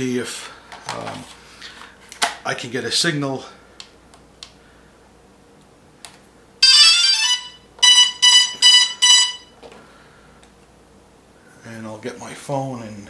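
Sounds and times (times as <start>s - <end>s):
short even beeps: 6.6s - 9.5s.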